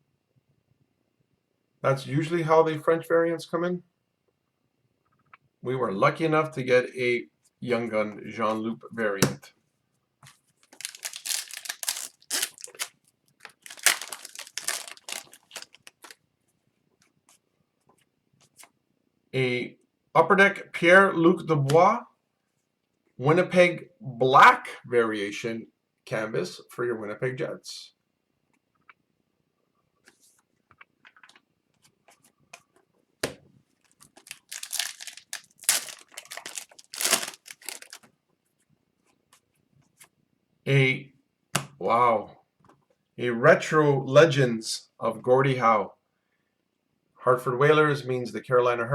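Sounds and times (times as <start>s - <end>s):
foil wrapper crinkling and tearing: 10.7s - 16.2s, 33.9s - 38.0s.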